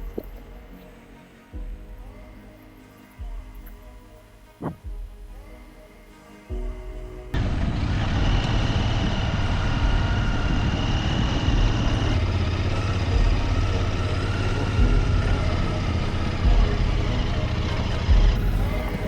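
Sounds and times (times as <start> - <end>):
motorcycle engine running: 7.4 - 19.0.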